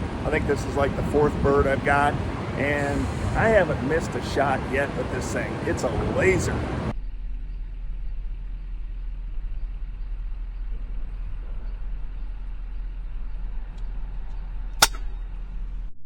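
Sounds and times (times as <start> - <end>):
low rumble: 6.6 - 15.9
air rifle shot: 14.8 - 15.1.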